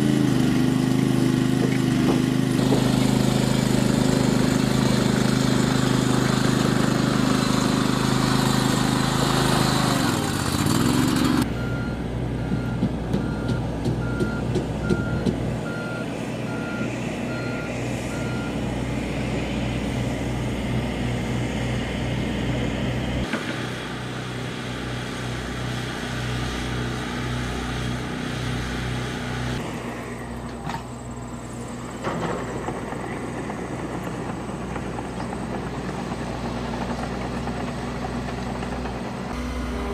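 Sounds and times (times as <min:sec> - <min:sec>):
heavy diesel engines running: 0:00.0 - 0:39.9
reversing alarm beeping: 0:11.5 - 0:18.6, 0:39.3 - 0:39.9.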